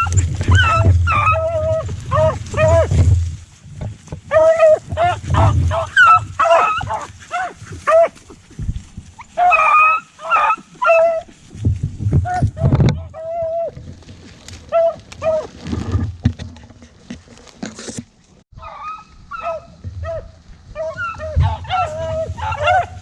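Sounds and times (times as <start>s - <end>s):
dog barking and yipping: 0.0s - 3.0s, 4.3s - 8.4s, 9.2s - 11.3s, 18.6s - 23.0s.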